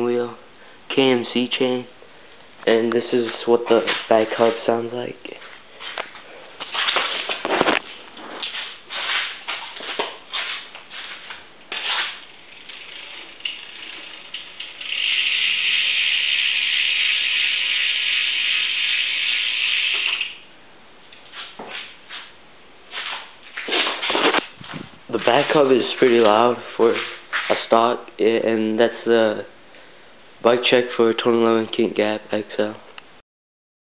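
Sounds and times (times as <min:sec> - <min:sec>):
bicycle hub ratcheting buzz: 0:12.2 - 0:20.5.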